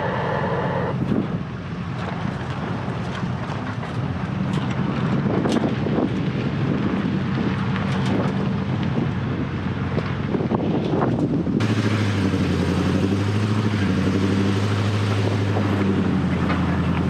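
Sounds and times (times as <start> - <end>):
vehicle engine and road hum: 0.0 - 17.0
wind noise: 0.0 - 17.0.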